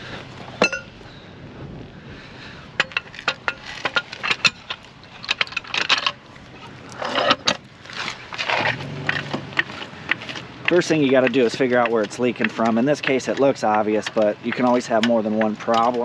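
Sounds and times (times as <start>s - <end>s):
scraping and rustling: 2.8s - 14.9s
metal tools clinking: 2.8s - 16.0s.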